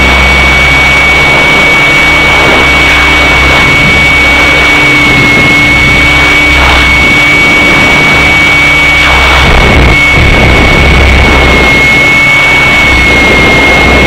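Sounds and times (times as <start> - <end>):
helicopter engine and rotor: 0.0 - 14.0.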